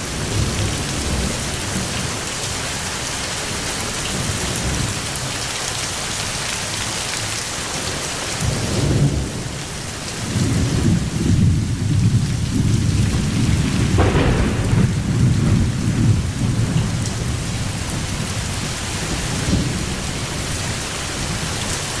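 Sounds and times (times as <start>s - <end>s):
steady rain: 0.0s - 22.0s
thunder rumbling: 10.2s - 21.4s
sharp crack of thunder: 10.3s - 18.2s.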